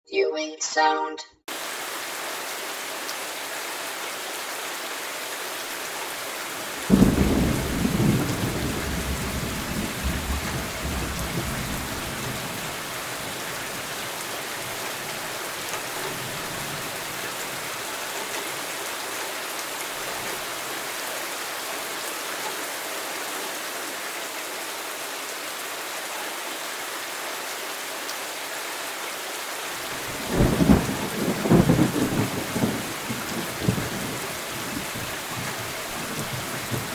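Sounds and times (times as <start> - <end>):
rain hissing: 1.5 - 25.8, 29.7 - 36.9
thunder rumbling: 6.8 - 12.8, 29.9 - 35.1.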